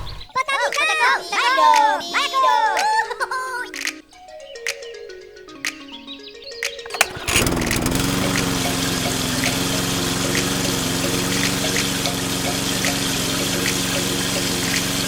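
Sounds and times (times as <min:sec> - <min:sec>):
faint regular ticking: 0:06.6 - 0:15.0
small electric motor humming: 0:06.9 - 0:15.0.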